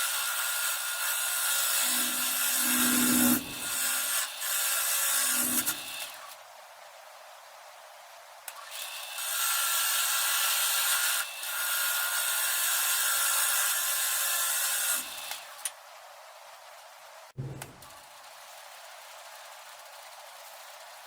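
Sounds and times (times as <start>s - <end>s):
woodworking power tool running: 0.0s - 6.4s, 8.7s - 15.6s.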